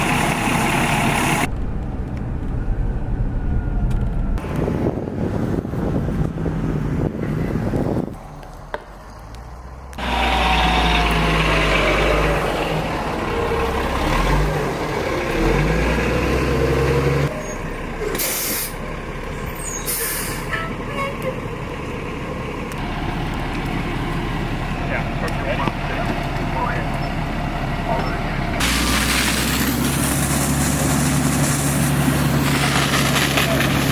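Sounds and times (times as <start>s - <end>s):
diesel engine rumble: 0.0s - 33.9s
air brake hisses: 18.2s - 18.8s, 19.7s - 20.5s.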